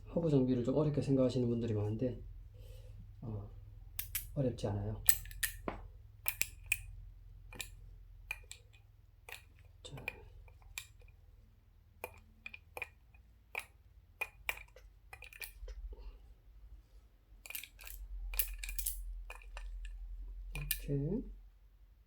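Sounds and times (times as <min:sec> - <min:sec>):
ball bearings clicking: 0:04.0 - 0:04.4, 0:05.0 - 0:11.2, 0:12.0 - 0:15.9, 0:17.4 - 0:21.0.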